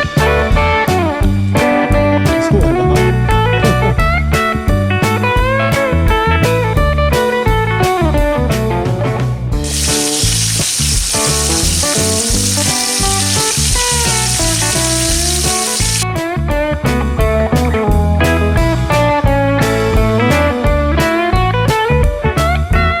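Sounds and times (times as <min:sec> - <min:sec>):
frying sizzle: 0:09.6 - 0:16.0
blues slide guitar music: 0:09.6 - 0:18.1.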